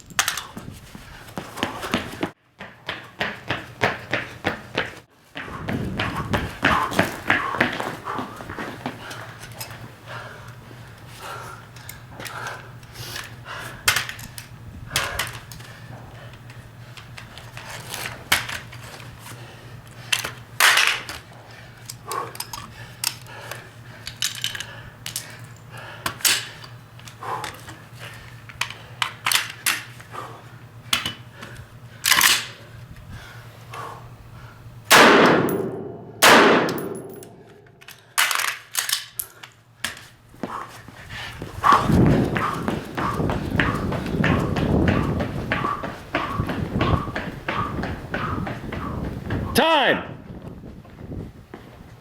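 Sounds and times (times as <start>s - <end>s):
rifle shots: 34.9s - 37.2s.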